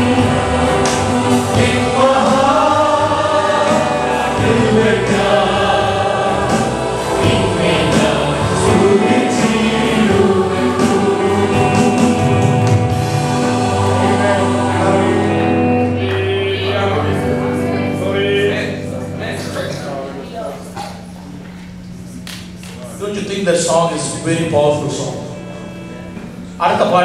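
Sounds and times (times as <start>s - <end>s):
musical accompaniment: 0.0s - 20.0s
congregation singing: 0.0s - 20.2s.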